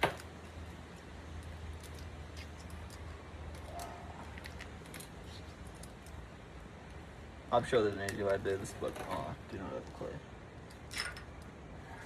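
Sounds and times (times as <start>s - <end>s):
small metal parts clicking: 0.9s - 6.2s, 10.6s - 11.6s.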